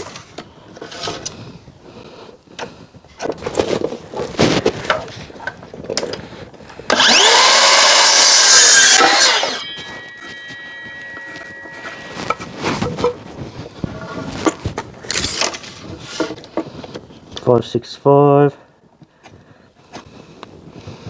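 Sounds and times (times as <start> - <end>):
power saw cutting timber: 6.9 - 13.2
saw blade whine: 6.9 - 14.1.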